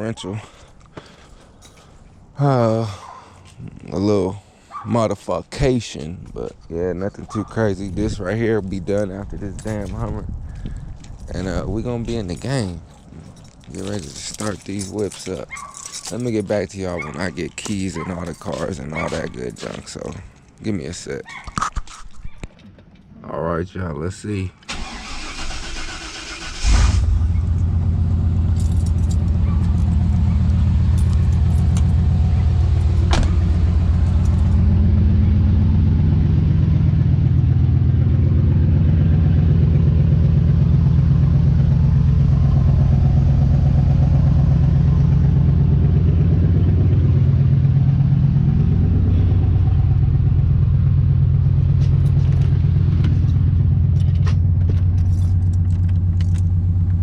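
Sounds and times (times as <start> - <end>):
engine starting and idling: 24.6 - 36.8.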